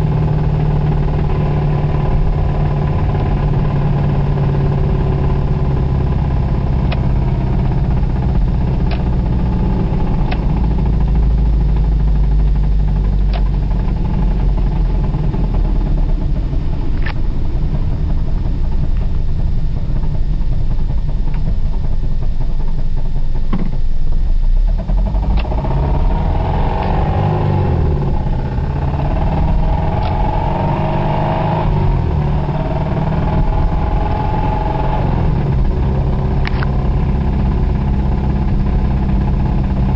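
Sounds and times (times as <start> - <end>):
car engine revving: 0.0 - 39.9
sharp clicks: 36.4 - 36.7.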